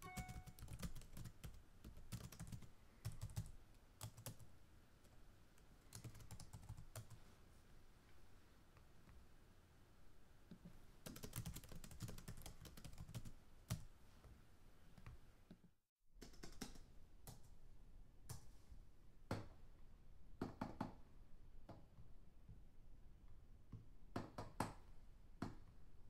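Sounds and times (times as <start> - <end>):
computer keyboard typing: 0.0 - 4.4, 5.9 - 7.2, 11.0 - 13.9, 16.2 - 17.5.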